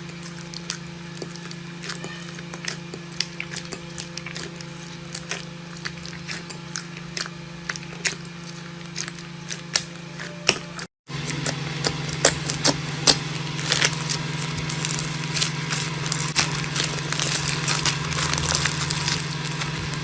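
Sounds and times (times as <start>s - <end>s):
steady low hum: 0.0s - 20.0s
slime popping and crackling: 11.3s - 20.0s.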